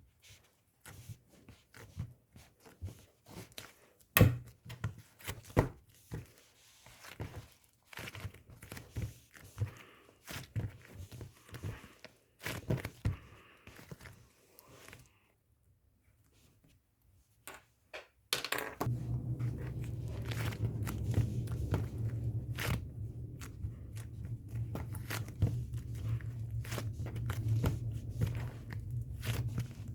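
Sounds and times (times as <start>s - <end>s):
slime squished by hand: 18.8s - 29.9s.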